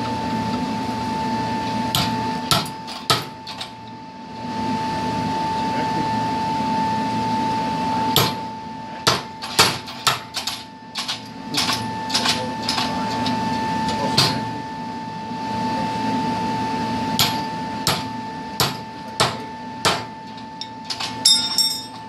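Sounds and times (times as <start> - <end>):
steady hum with whine: 0.0 - 22.0
hammer striking steel: 17.2 - 20.1, 21.0 - 22.0.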